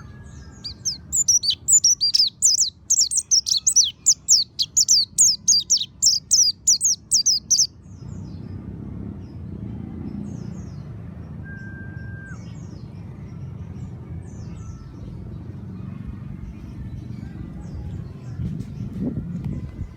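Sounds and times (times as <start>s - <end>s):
bird chirping song: 0.0s - 8.5s, 10.1s - 19.9s
held whistle: 11.4s - 12.6s.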